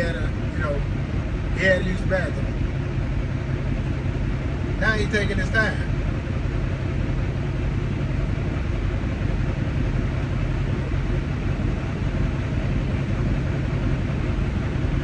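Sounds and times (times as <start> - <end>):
diesel truck engine idling: 0.0 - 15.0.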